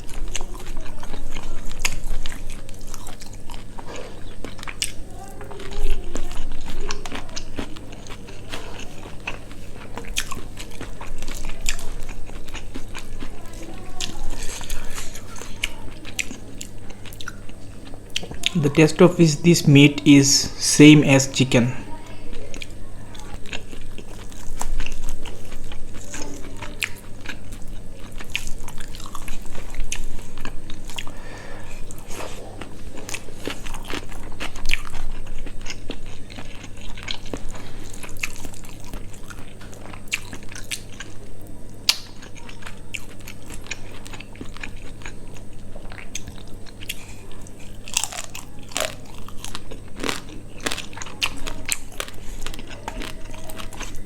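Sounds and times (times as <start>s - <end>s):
close chewing and biting: 0.0s - 18.9s, 22.1s - 54.0s
wet mouth clicks and crunches: 0.1s - 5.0s, 41.8s - 45.2s, 45.9s - 54.0s.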